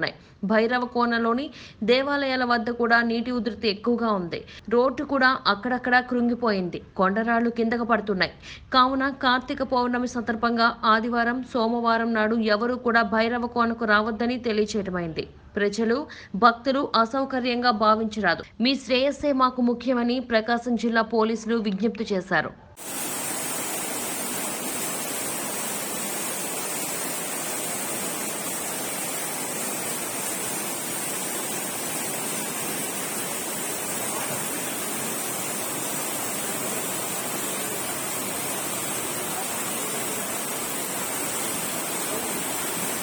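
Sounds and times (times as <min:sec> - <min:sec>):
water rushing in a stream: 0:22.8 - 0:43.0.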